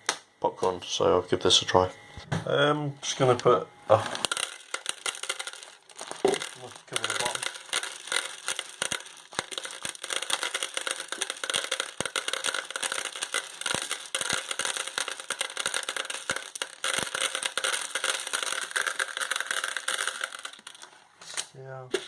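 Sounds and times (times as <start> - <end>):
popcorn kernels pouring into plastic bowl: 3.9 - 21.0.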